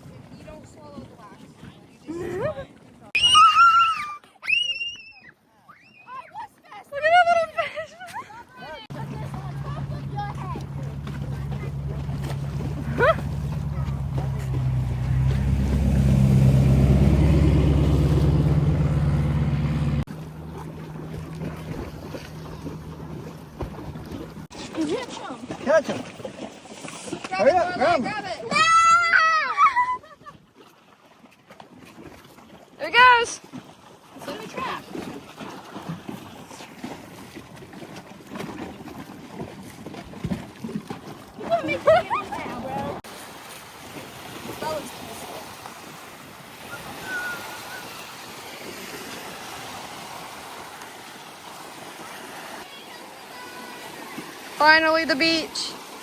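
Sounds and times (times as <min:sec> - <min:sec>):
engine humming: 0:08.9 - 0:24.5.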